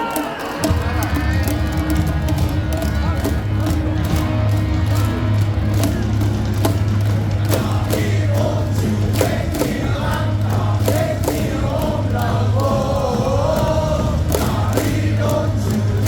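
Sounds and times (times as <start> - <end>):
crowd chanting and singing: 0.0 - 16.0
loud music over loudspeakers: 0.0 - 16.0.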